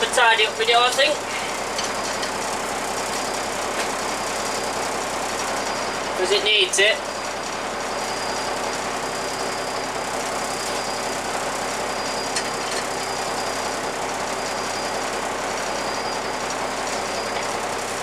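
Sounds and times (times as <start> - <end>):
diesel engine idling: 0.0 - 18.0.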